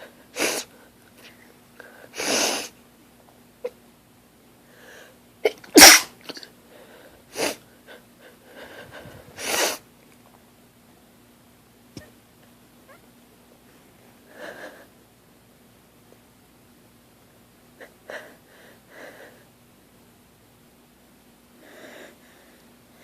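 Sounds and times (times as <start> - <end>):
woman sneezing: 5.5 - 6.2.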